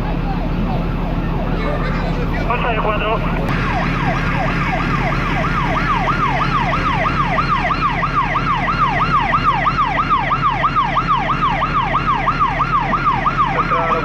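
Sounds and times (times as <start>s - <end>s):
emergency siren yelping: 0.1s - 14.0s
steady low hum: 2.1s - 9.2s.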